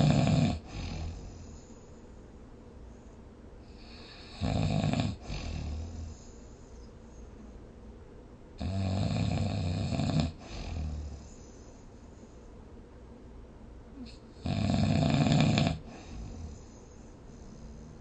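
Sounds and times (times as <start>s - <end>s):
person snoring: 0.0s - 1.6s, 3.7s - 6.2s, 8.6s - 11.4s, 14.0s - 16.7s
soft breath: 0.6s - 4.4s, 5.2s - 7.9s, 10.4s - 12.8s, 15.8s - 18.0s.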